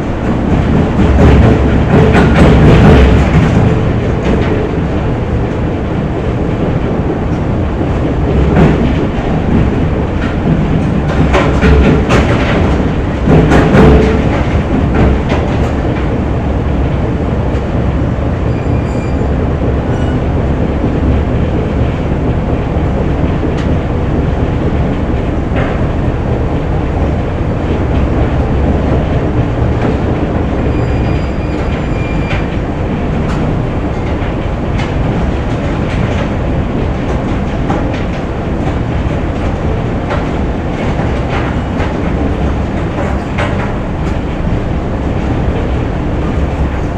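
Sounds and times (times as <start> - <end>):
factory machinery rumble and clatter: 0.0 - 46.9
faint high squeals: 18.5 - 19.3, 30.7 - 32.4.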